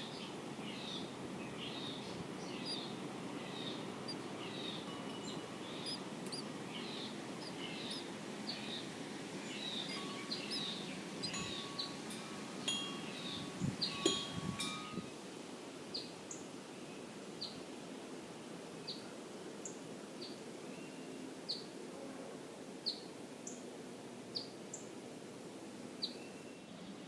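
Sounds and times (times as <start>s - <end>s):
songbird calling: 0.0s - 15.1s.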